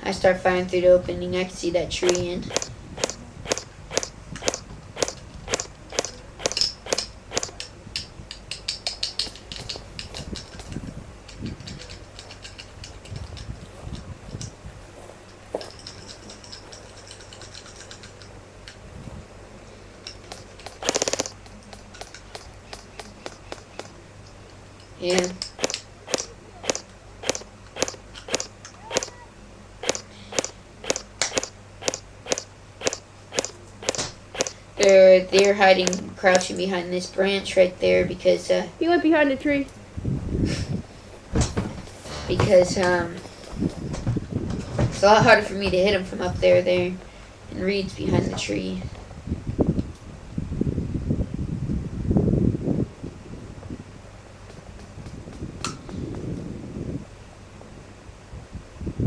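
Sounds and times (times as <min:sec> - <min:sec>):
airsoft gun firing: 0:02.0 - 0:07.6, 0:20.3 - 0:24.0, 0:25.1 - 0:29.2, 0:29.8 - 0:36.4.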